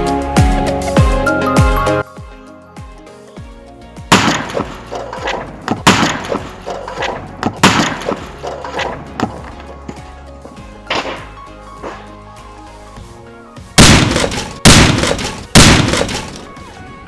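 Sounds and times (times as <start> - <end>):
heavy crashing hits: 4.1 - 10.2.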